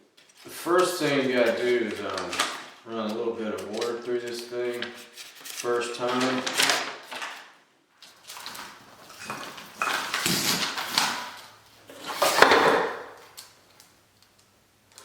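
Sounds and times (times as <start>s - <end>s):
hard objects clattering and knocking: 8.5s - 13.3s.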